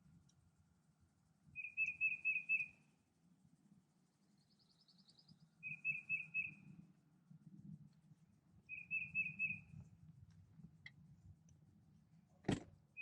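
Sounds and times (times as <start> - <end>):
faint low hum: 0.0 - 13.0
small bird chirping: 1.6 - 2.9, 4.2 - 6.7, 8.7 - 9.8.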